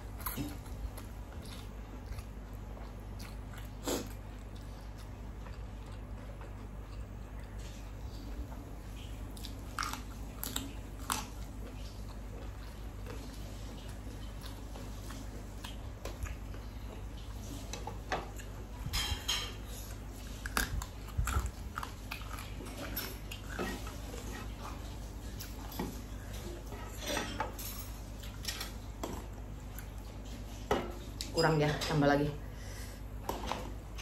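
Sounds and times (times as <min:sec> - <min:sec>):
person chewing crunchy food: 0:00.0 - 0:26.7
steady low hum: 0:00.0 - 0:31.6.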